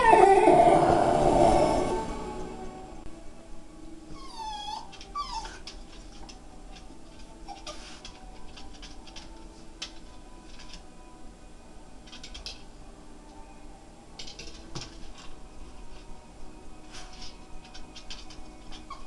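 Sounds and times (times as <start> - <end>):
dog whimpering: 0.0 - 2.0, 4.1 - 5.8, 7.4 - 8.1, 18.6 - 19.0.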